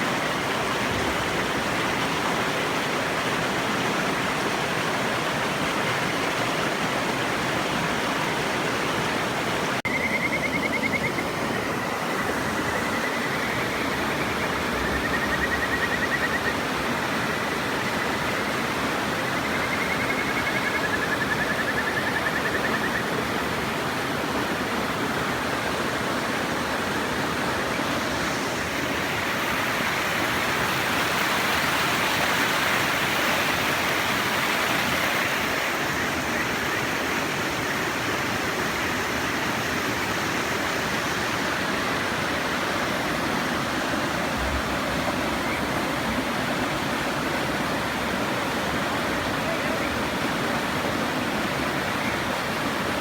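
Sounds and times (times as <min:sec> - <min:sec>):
river rushing: 0:00.0 - 0:53.0
frog trilling whistles: 0:09.9 - 0:11.7, 0:12.5 - 0:16.6, 0:19.2 - 0:23.1.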